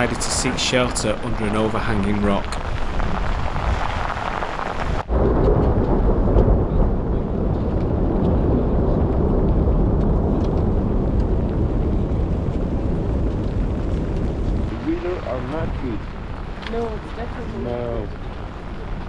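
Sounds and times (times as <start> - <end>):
heavy rain: 0.0 - 19.0
thunder rumbling: 0.0 - 19.0.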